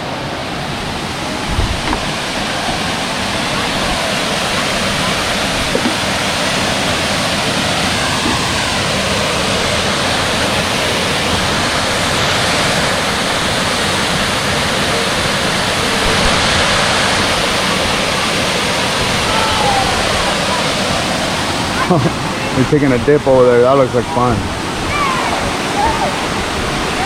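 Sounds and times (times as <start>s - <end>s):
waterfall pouring into a pool: 1.2s - 24.4s.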